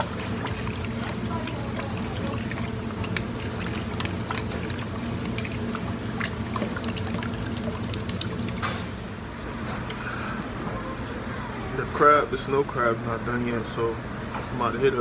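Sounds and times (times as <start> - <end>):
pot bubbling with pops: 0.0 - 9.1.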